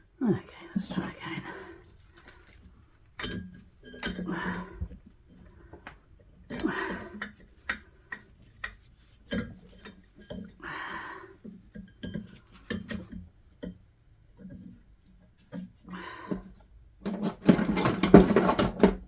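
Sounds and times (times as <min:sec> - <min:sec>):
metal tools clinking and knocking: 0:01.9 - 0:04.7, 0:17.0 - 0:19.0.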